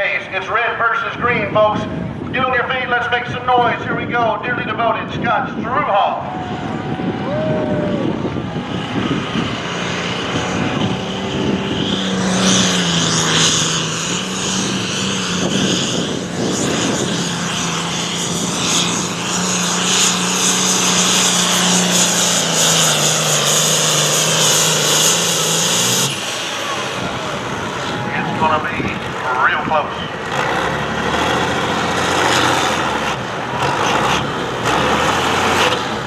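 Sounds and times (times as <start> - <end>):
diesel tractor engine: 0.0 - 36.0
loud high-pitched rush: 12.7 - 33.1.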